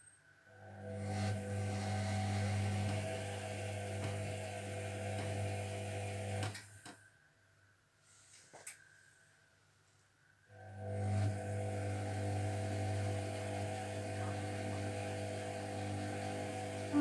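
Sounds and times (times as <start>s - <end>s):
washing machine motor humming: 0.8s - 6.5s, 10.8s - 17.0s.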